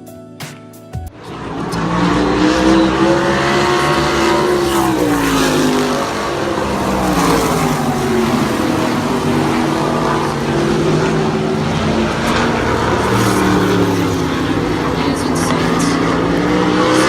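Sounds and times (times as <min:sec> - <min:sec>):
race car engines: 0:01.1 - 0:17.0.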